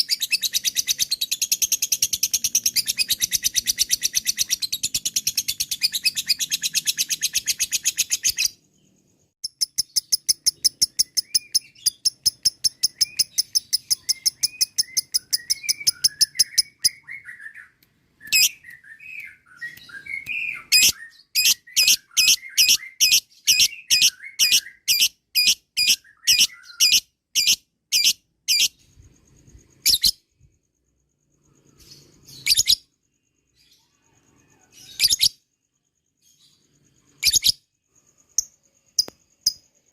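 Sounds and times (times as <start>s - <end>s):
lovebird shrill chirping chatter: 9.4s - 28.8s, 32.3s - 32.9s, 37.1s - 37.6s.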